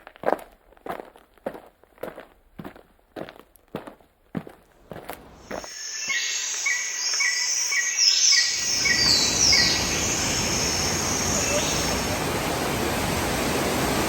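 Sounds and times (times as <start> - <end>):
footsteps: 0.0 - 5.8
birds chirping: 5.2 - 14.0
descending bird whistles: 5.5 - 12.2
loud steady rushing noise: 8.6 - 14.0.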